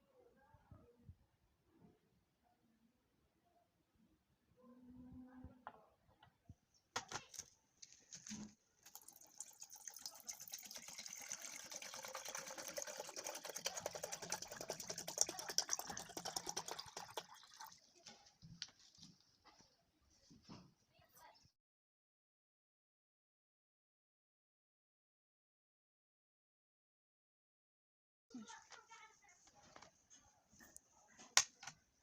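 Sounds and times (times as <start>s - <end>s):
crackly liquid trickle: 8.1s - 19.1s.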